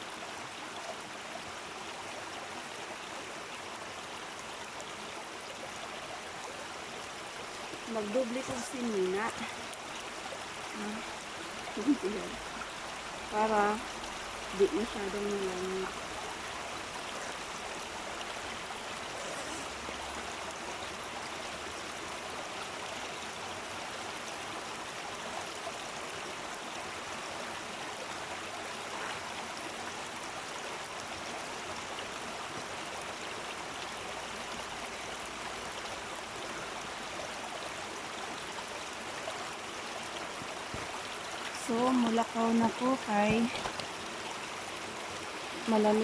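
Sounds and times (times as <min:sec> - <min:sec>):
waterfall water rushing: 0:00.0 - 0:46.0.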